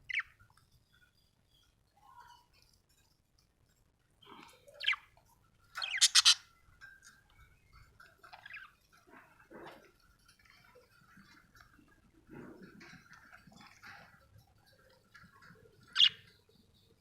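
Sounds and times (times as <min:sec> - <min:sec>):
budgerigar chirping: 0:05.8 - 0:06.4, 0:16.0 - 0:16.2.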